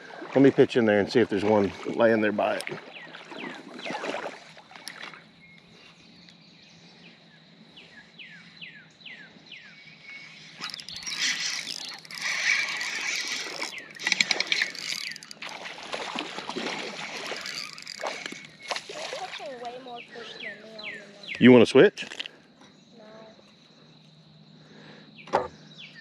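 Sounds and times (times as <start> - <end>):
water splashing and sloshing: 0.0 - 5.4, 10.6 - 20.8
bird chirping: 4.8 - 15.6, 17.0 - 21.7, 24.9 - 26.0.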